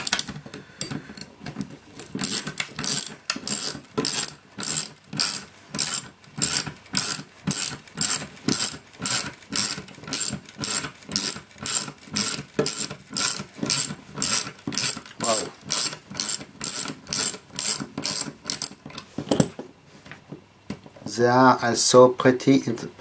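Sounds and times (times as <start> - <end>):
ratcheting screwdriver clicking: 2.1 - 15.1.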